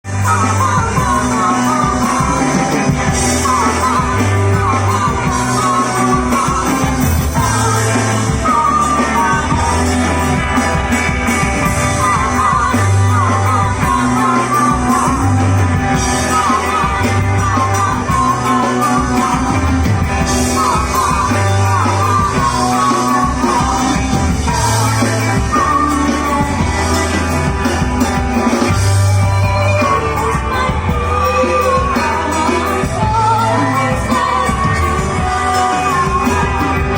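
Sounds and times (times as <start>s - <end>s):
bass line: 0.0s - 36.9s
drums with cymbals: 0.0s - 36.9s
electric guitar: 0.0s - 36.9s
person singing: 0.0s - 36.9s.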